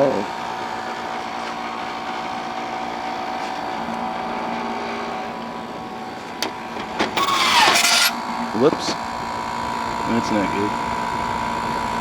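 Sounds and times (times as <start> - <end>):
dehumidifier humming: 0.0 - 12.0
scraping clatter: 7.1 - 8.2.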